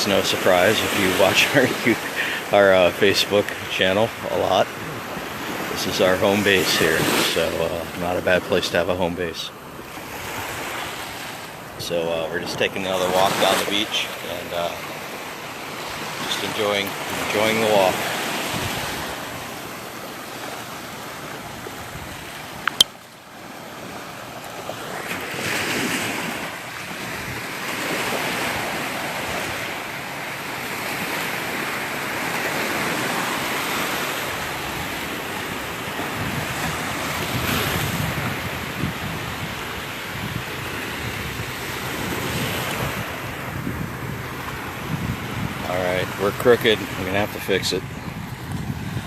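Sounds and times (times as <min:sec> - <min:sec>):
waves washing on sandy beach: 0:00.0 - 0:49.0
wind buffeting microphone: 0:14.9 - 0:22.9, 0:23.7 - 0:33.4, 0:34.2 - 0:49.0
sharp click: 0:22.6 - 0:23.0.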